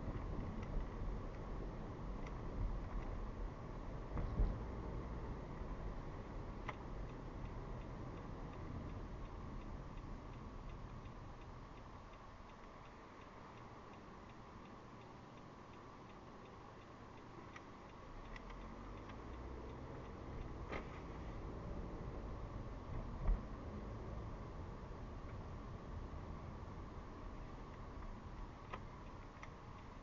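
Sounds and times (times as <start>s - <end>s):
engine and road rumble: 0.0s - 30.0s
turn-signal indicator ticking: 5.0s - 20.7s.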